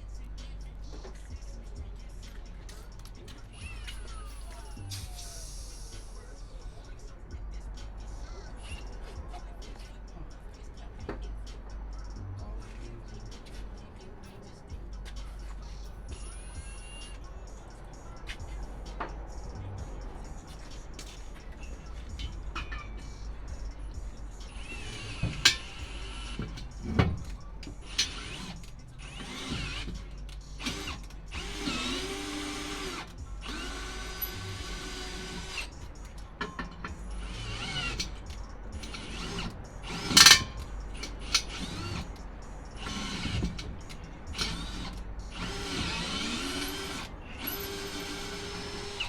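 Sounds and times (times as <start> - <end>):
power drill bursts: 27.9 - 29.9, 30.6 - 35.7, 38.9 - 40.6, 41.3 - 42.1, 42.8 - 43.6, 44.4 - 49.0.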